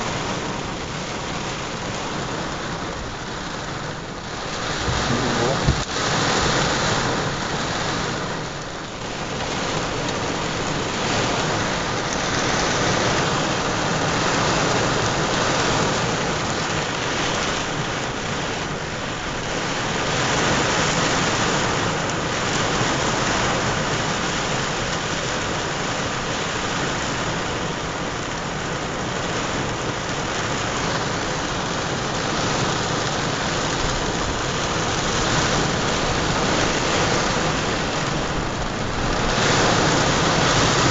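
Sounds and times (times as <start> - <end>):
heavy rain on a truck roof: 0.0 - 40.9.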